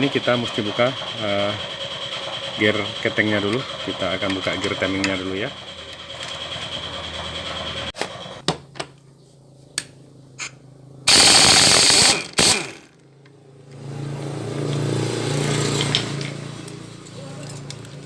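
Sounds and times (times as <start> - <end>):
air tool bursts: 11.1 - 13.0.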